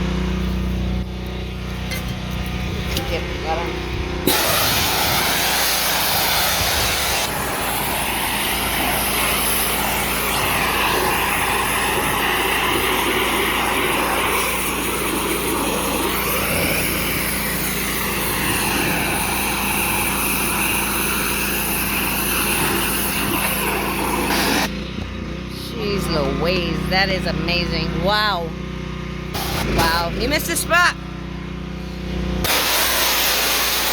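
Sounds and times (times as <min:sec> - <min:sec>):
engine humming: 0:00.0 - 0:33.9
high-pressure spray hissing: 0:04.2 - 0:24.7, 0:29.4 - 0:30.0, 0:32.4 - 0:33.9.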